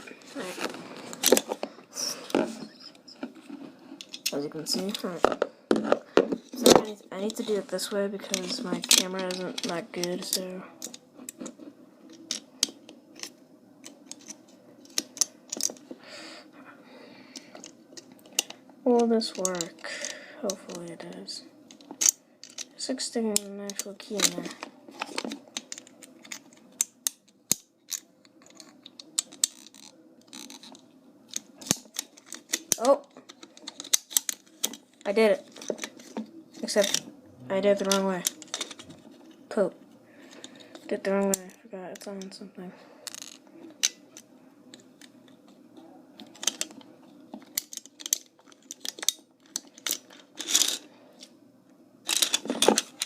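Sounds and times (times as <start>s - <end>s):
toy lock clicks and scrapes: 2.6s - 5.2s, 6.4s - 15.9s, 21.7s - 38.9s, 43.0s - 44.0s, 46.3s - 46.8s, 47.4s - 51.2s, 52.0s - 53.0s.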